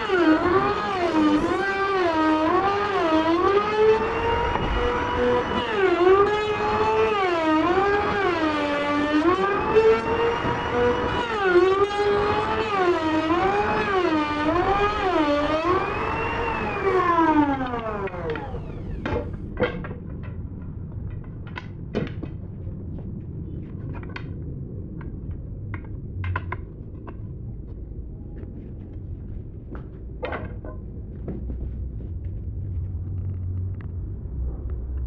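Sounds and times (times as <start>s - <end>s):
wood and tools knocking: 13.8s - 22.5s, 25.0s - 27.3s, 29.7s - 31.8s
steady low rumble: 13.9s - 35.0s.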